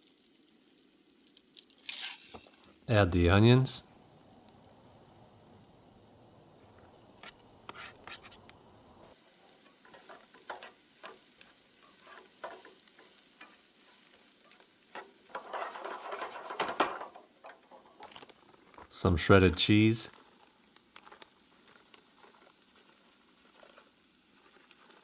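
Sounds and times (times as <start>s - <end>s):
chopped onions pattering into pan: 4.3s - 19.0s, 19.7s - 25.0s.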